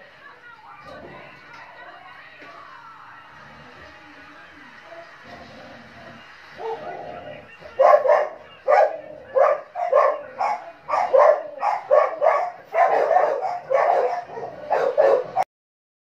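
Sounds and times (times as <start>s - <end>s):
dog barking: 6.6s - 7.0s, 7.7s - 15.4s.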